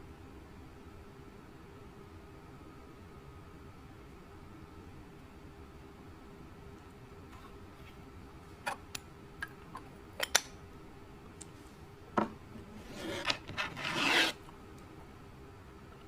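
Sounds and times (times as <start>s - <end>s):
crackling rub: 12.8s - 14.4s.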